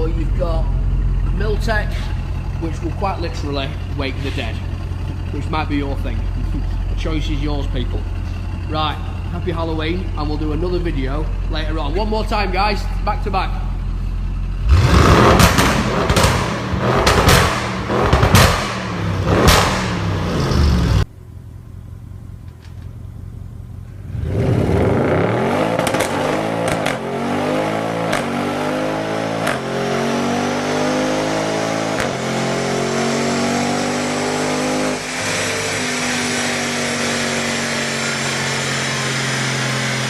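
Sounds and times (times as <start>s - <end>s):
car engine revving and accelerating: 14.6s - 21.1s, 24.0s - 40.0s.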